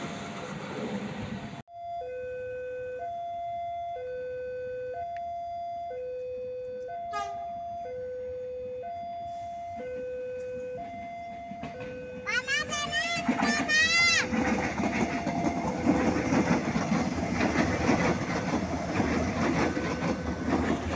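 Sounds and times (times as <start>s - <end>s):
two-tone electronic warning signal: 1.7s - 12.4s.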